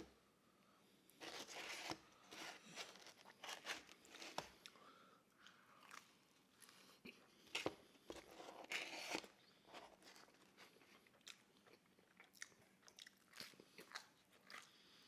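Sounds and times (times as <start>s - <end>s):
chewing and biting pizza: 9.9s - 15.0s.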